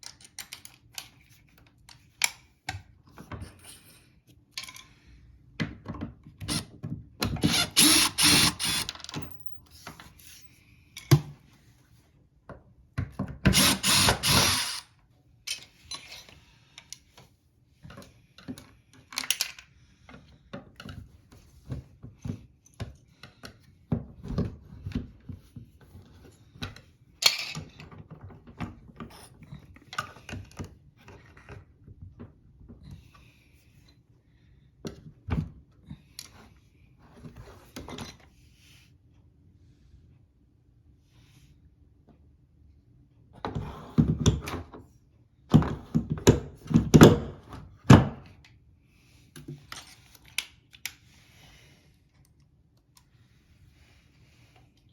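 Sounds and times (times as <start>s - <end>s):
power drill running: 7.4s - 8.9s, 13.5s - 14.8s.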